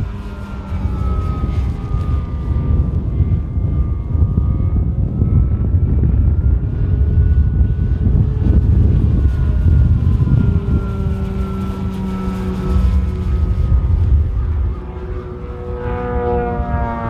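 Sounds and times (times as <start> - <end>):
model airplane motor whine: 0.0 - 17.0
heavy low rumble: 12.6 - 17.0.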